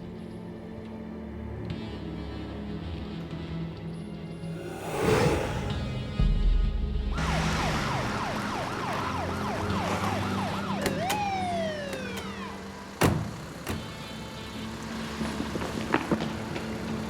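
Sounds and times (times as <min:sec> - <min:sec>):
police siren yelping and wailing: 0:07.2 - 0:12.8.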